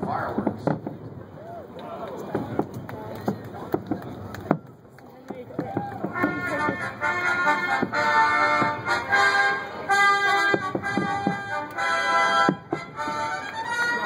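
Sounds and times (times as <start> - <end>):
military brass band march: 6.0 - 14.0
percussive strikes: 10.3 - 14.0.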